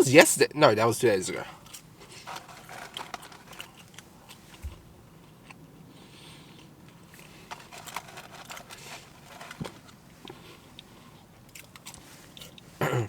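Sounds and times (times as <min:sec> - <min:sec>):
food packaging crackling: 0:01.6 - 0:04.6, 0:06.9 - 0:12.7
chewing chips: 0:01.6 - 0:12.8.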